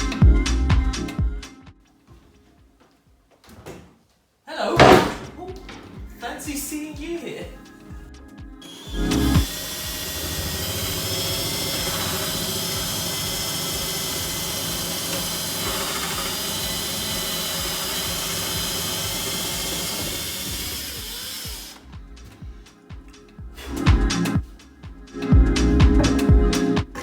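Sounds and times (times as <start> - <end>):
background music with a beat: 0.0 - 3.3, 5.4 - 14.1, 14.7 - 27.0
power tool running: 8.6 - 21.8.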